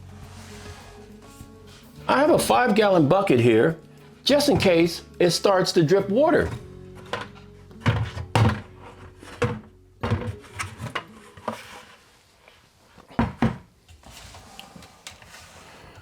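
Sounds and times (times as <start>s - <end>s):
knocks in a wooden cabinet: 13.2s - 13.7s.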